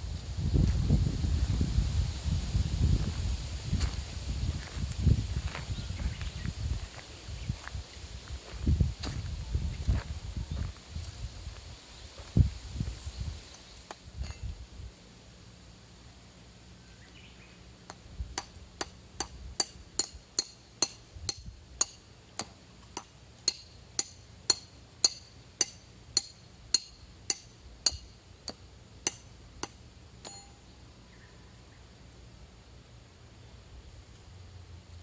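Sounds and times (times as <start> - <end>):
metal clinking: 18.4 - 30.7.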